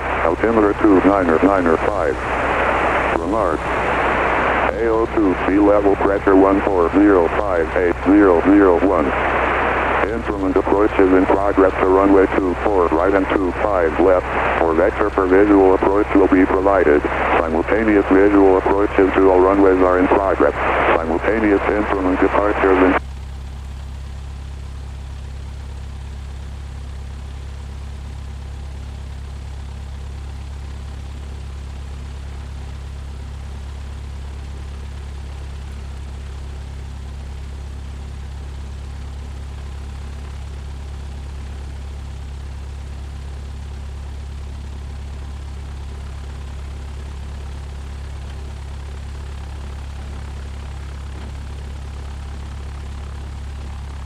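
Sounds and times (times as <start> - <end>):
propeller plane engine droning: 0.0 - 54.0.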